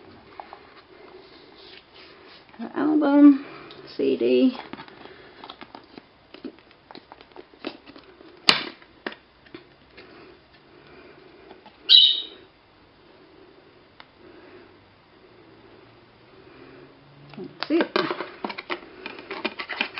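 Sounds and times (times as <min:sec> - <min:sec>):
budgie chirp: 0:11.8 - 0:12.5.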